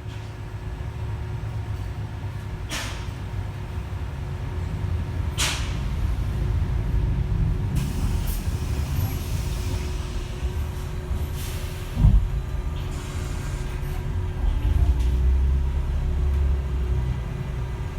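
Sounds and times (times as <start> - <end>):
bus low rumble: 0.0 - 17.9
brief thump: 12.0 - 12.5.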